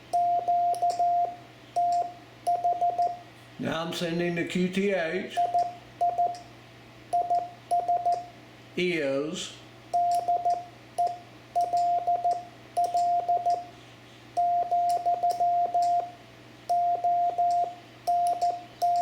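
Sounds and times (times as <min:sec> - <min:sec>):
morse code tone: 0:00.1 - 0:03.2, 0:05.4 - 0:06.4, 0:07.2 - 0:08.3, 0:10.0 - 0:13.7, 0:14.4 - 0:16.1, 0:16.7 - 0:19.0.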